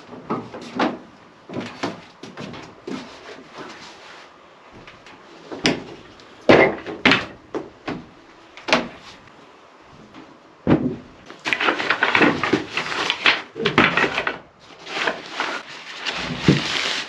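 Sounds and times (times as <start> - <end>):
wood knocks and thuds: 0.1 - 3.1, 4.8 - 9.1, 10.6 - 14.4.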